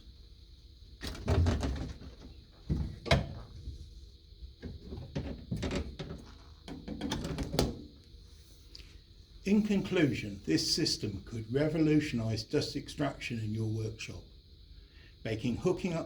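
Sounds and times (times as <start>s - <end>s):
hose thump and rustle: 1.0s - 4.0s
plastic fittings clunking and clacking: 4.6s - 7.8s.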